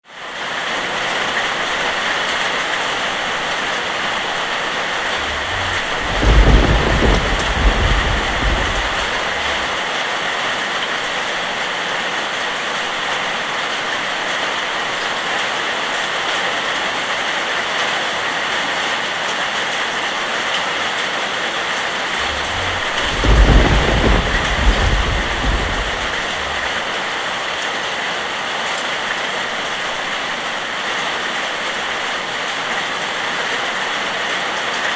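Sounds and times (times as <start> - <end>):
rain falling: 0.2 - 10.1, 21.8 - 32.6
thunder rumbling: 4.4 - 9.8, 22.1 - 26.8.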